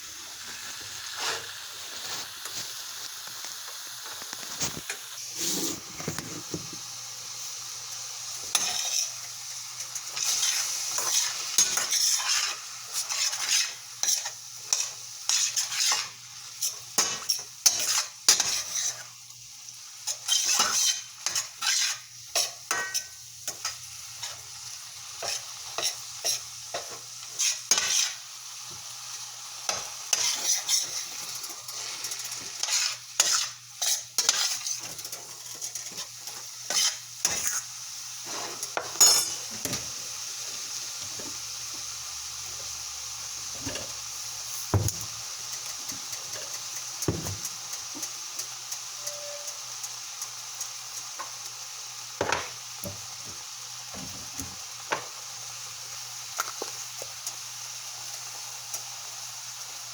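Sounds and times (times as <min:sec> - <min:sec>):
food sizzling in a frying pan: 0:00.0 - 0:59.9
utensil scraping a pan: 0:04.5 - 0:06.8, 0:10.1 - 0:19.1, 0:20.1 - 0:24.4, 0:25.2 - 0:28.2, 0:29.7 - 0:39.8, 0:49.0 - 0:49.6.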